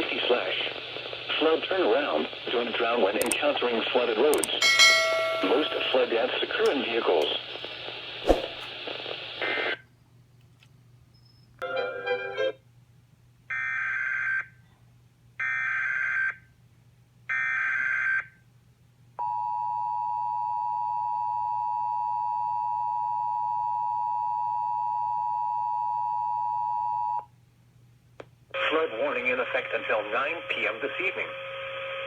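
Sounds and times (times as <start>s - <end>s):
steady alarm tone: 4.6s - 6.0s.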